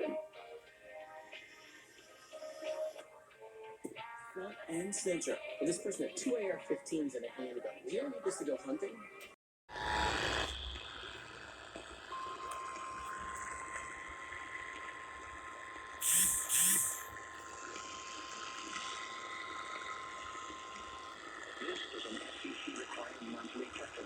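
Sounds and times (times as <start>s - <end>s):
radio hiss: 16.0s - 17.1s, 20.3s - 24.0s
static bursts: 16.0s - 17.1s.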